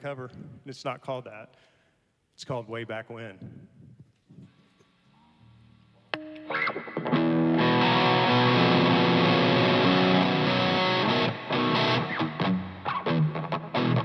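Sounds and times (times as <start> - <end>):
distorted electric guitar: 5.2 - 14.0.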